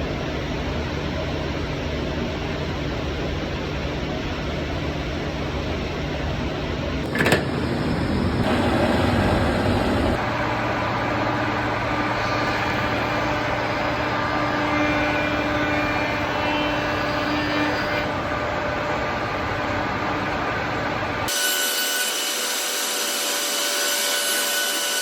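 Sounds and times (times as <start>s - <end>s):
surface planer running: 7.0s - 16.6s.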